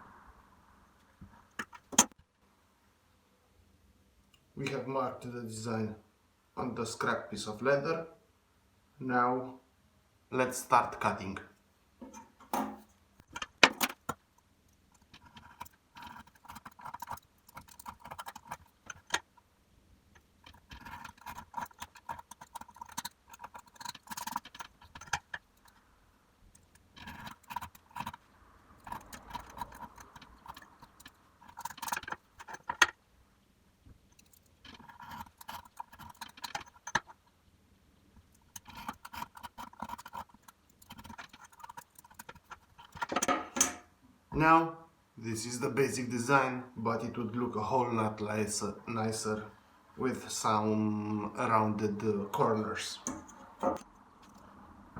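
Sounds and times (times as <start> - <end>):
tools clicking: 34.1 - 37.2.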